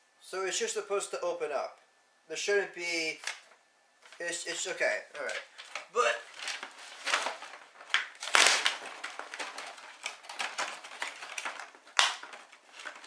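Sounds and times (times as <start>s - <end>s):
hard plastic parts clattering: 5.2s - 13.0s.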